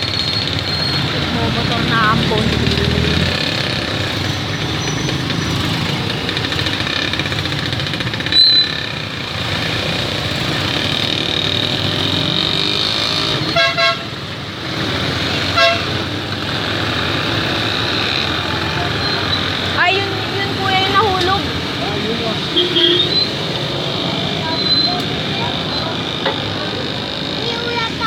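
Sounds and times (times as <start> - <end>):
road traffic noise: 0.0 - 28.0
short horn beeps: 22.6 - 23.4.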